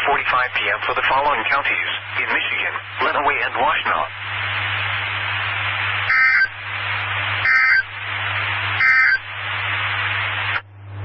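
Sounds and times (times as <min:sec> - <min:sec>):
radio static hiss: 0:00.0 - 0:11.0
digital data tone bursts: 0:06.1 - 0:06.6, 0:07.4 - 0:07.9, 0:08.8 - 0:09.3.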